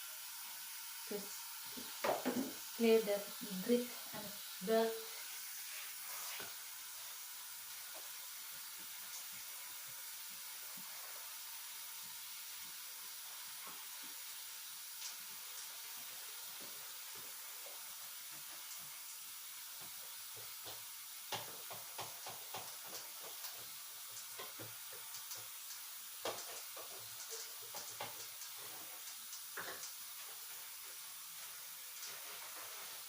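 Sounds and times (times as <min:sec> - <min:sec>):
steady hiss: 0:00.0 - 0:33.0
objects knocking and clicking: 0:20.5 - 0:23.6.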